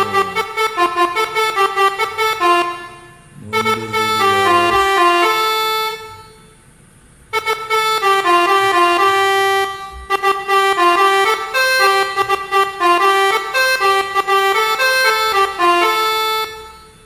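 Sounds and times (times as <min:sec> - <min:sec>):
multi-tone bus horn tune: 0:00.0 - 0:06.6, 0:07.3 - 0:17.0.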